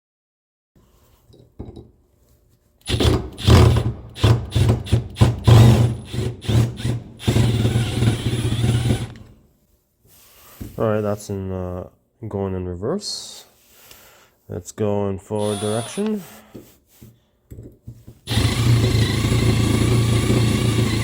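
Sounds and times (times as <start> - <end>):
power drill bit grinding screw: 5.5 - 9.2, 15.4 - 16.3, 18.3 - 21.0.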